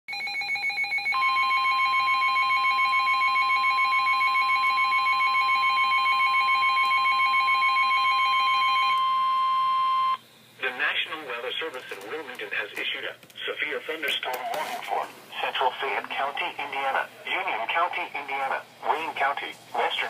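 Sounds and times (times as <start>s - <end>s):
steady alarm tone: 0.1s - 10.2s.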